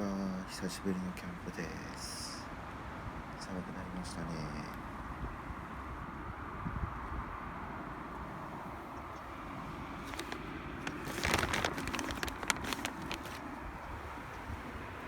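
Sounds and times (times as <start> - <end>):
outdoor background hum: 0.0 - 15.0
light clicks and rustles: 9.0 - 14.7.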